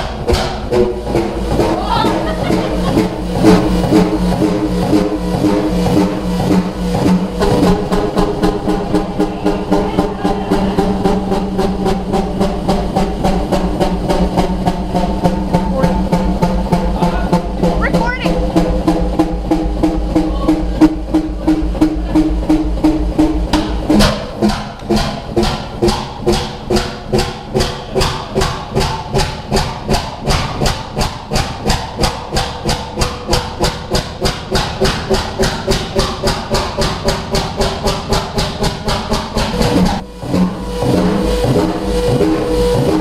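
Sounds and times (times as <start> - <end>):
diesel engine running: 0.0 - 43.0.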